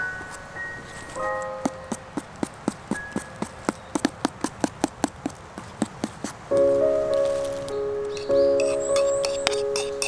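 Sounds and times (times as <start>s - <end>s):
background music sustained chord: 6.5s - 10.0s.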